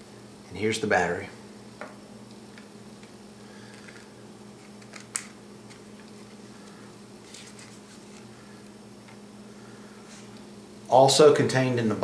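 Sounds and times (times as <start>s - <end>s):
low electrical hum: 0.0s - 12.0s
plastic parts clicking and rustling: 3.7s - 5.8s.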